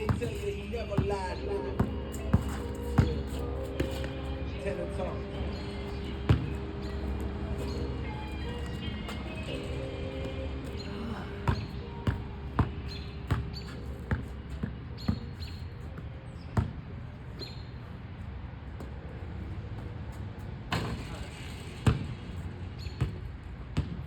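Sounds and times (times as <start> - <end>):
basketball bouncing on hard court: 0.0 - 4.2, 5.6 - 7.7, 10.2 - 16.8, 21.8 - 22.2, 23.0 - 23.2, 23.8 - 24.0
background music: 0.0 - 13.6.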